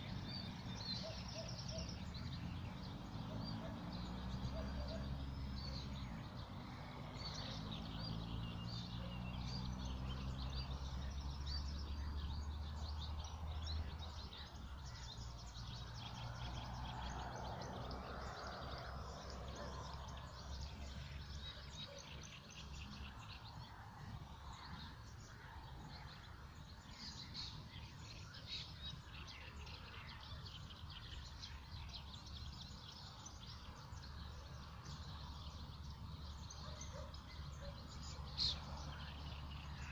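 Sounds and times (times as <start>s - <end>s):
birds chirping and singing: 0.0s - 39.9s.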